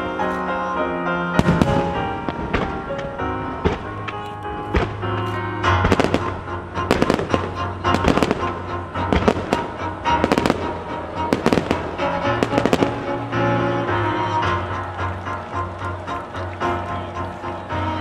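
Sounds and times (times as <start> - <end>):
accompanying music: 0.0 - 18.0
fireworks bursting with sharp bangs: 1.4 - 13.6.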